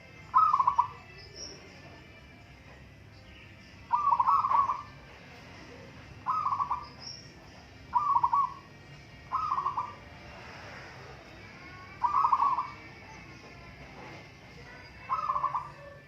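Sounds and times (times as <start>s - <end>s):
dove cooing: 0.2s - 1.1s, 3.9s - 8.7s, 9.3s - 13.2s, 14.0s - 16.0s.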